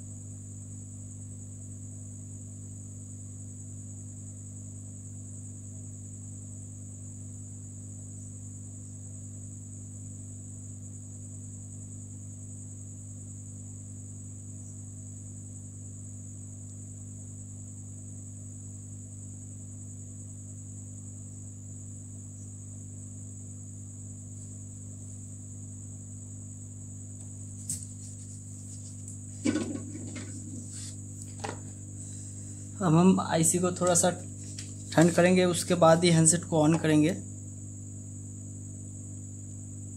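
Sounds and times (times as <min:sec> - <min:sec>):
electrical hum: 0:00.0 - 0:39.9.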